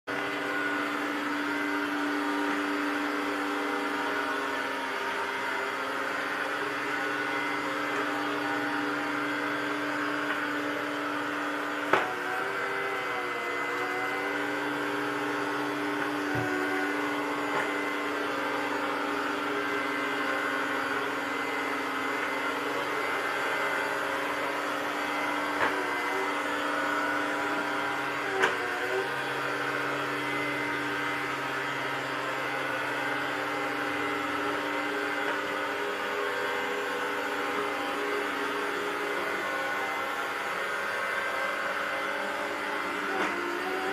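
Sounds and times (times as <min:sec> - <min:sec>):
robot vacuum motor hum: 0:00.1 - 0:43.9.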